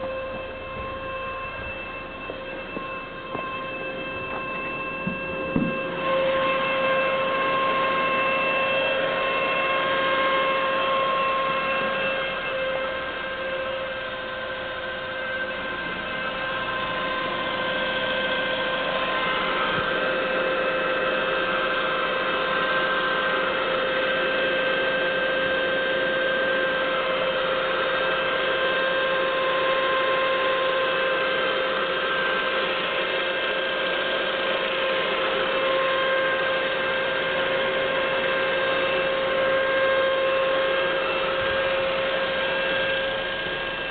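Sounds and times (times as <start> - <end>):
car engine running: 0.0 - 25.1, 25.9 - 43.9
high-pitched whine: 0.0 - 43.9.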